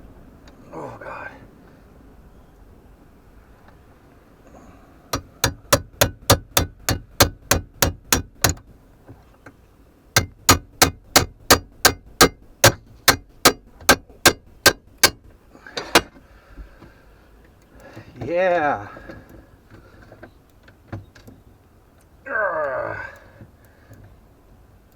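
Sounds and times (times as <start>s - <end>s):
hammer striking metal: 5.2s - 8.6s, 10.2s - 15.2s.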